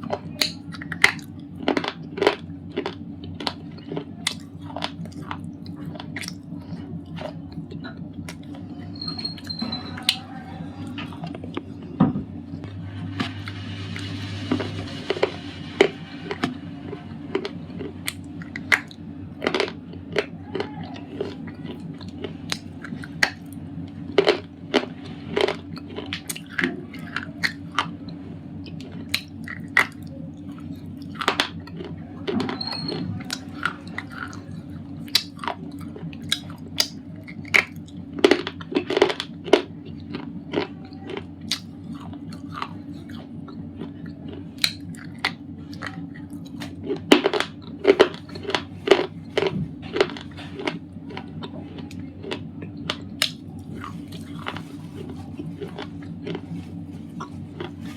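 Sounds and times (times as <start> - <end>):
steady low hum: 0.0 - 57.9
chalky pencils being crunched: 46.8 - 57.9.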